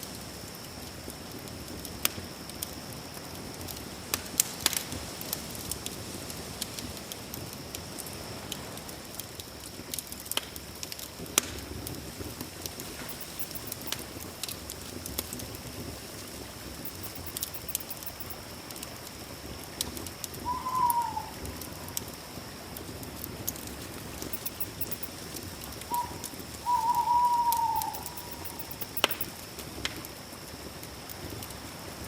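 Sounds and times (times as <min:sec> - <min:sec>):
campfire crackling: 0:00.1 - 0:31.9
steady high-pitched tone: 0:13.1 - 0:14.0, 0:16.8 - 0:18.4, 0:24.2 - 0:25.2, 0:25.9 - 0:29.3
animal call: 0:20.5 - 0:21.5, 0:25.9 - 0:29.3.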